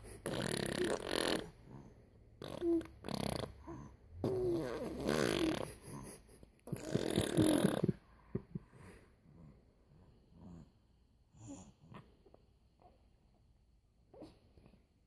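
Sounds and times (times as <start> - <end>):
baby blowing raspberries: 0.0 - 1.7, 2.4 - 6.0, 6.7 - 8.0.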